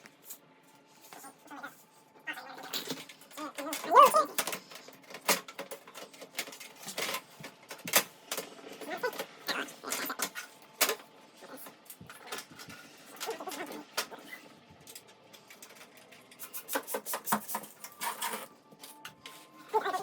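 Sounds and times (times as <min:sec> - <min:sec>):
plastic cable clicks and rattles: 0:02.7 - 0:09.3.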